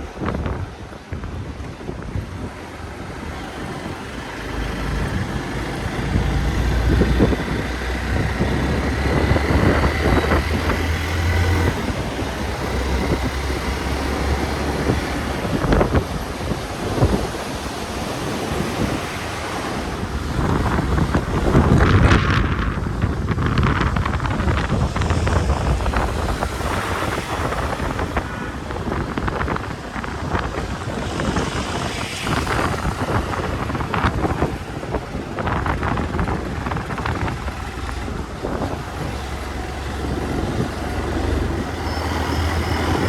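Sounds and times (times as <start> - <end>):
wind buffeting microphone: 0.0 - 43.0
motorcycle engine running: 2.6 - 31.8.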